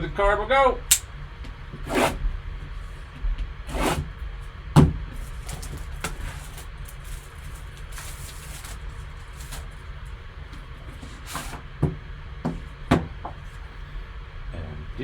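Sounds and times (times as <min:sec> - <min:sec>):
cardboard packaging rustling: 0:05.2 - 0:09.8.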